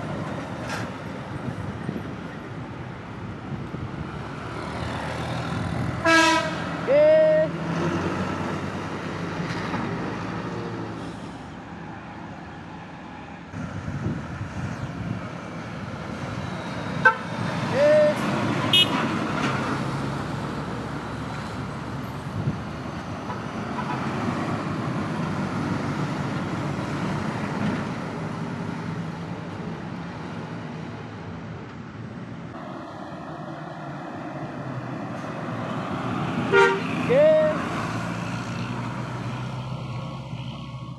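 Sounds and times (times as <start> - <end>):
passing vehicles: 0.0 - 40.9
car horn toots: 6.0 - 6.6, 18.7 - 19.1, 36.5 - 37.0.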